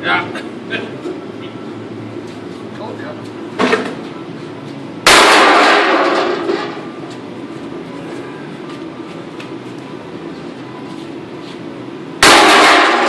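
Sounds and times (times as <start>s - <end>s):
loud bang: 5.1s - 6.8s, 12.2s - 13.0s.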